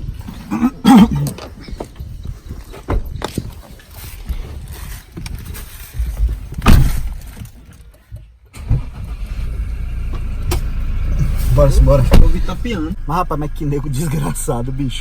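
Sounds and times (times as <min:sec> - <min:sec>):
loud thump: 0:06.6 - 0:07.2, 0:12.0 - 0:12.8
vehicle engine running: 0:08.6 - 0:15.0.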